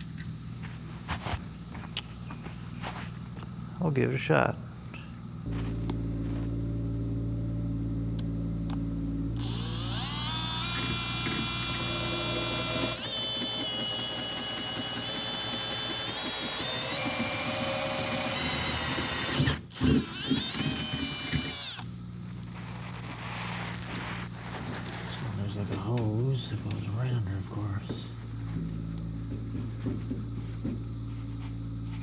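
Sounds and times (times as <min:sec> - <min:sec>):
steady low hum: 0:00.0 - 0:13.4, 0:16.8 - 0:32.0
power drill cutting steel: 0:09.4 - 0:21.9.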